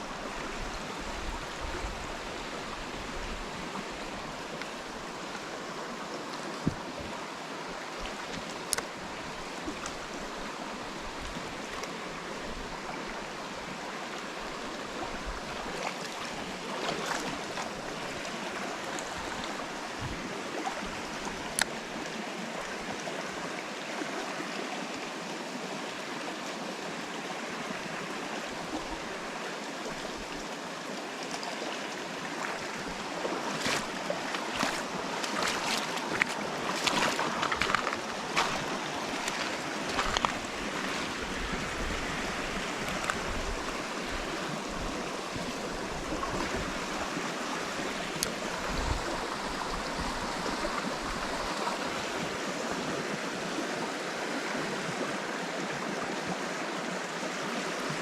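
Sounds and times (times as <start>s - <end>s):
stream water rushing: 0.0s - 58.0s
sharp clicks and splashes: 33.6s - 41.2s, 42.8s - 43.6s.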